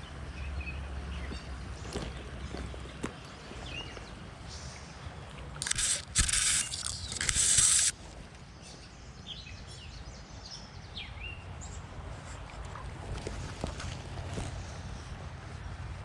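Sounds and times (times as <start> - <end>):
small birds chirping: 0.0 - 16.0
fishing reel drag buzzing: 5.6 - 8.0.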